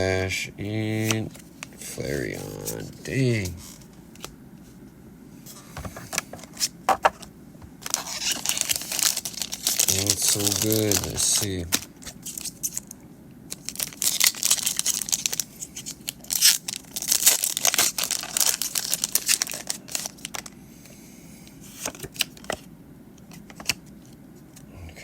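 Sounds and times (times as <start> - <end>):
foil wrapper crinkling: 7.8 - 20.6.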